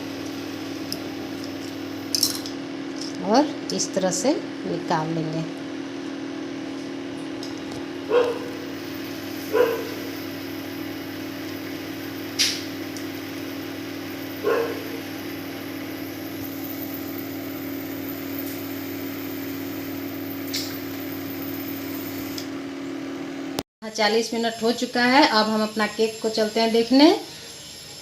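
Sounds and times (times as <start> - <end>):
steady hum: 0.0 - 28.0
dog barking: 8.1 - 8.6, 9.5 - 10.0, 14.4 - 15.0.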